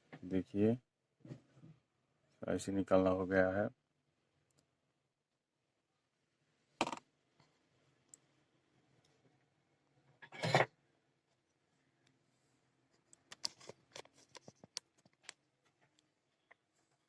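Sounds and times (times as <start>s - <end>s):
light clicks and taps: 12.9s - 16.7s.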